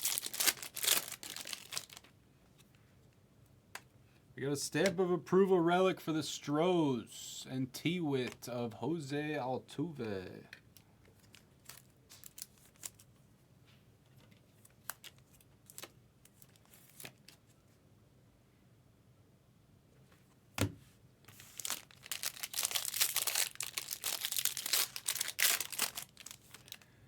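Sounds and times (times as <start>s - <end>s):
foil wrapper crinkling and tearing: 0.0s - 2.1s, 11.2s - 13.1s, 14.6s - 17.4s, 21.3s - 26.9s.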